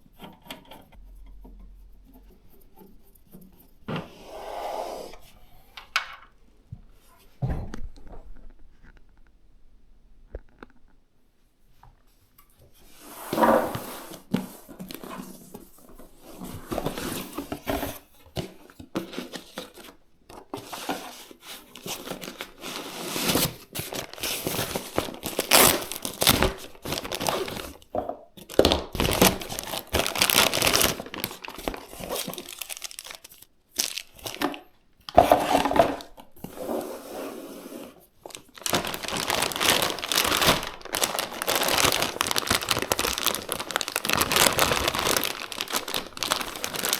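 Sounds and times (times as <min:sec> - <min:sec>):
plastic packaging crinkling: 0:21.7 - 0:34.7, 0:38.2 - 0:46.9
plastic tearing: 0:21.8 - 0:27.8, 0:28.4 - 0:34.6, 0:38.2 - 0:46.9.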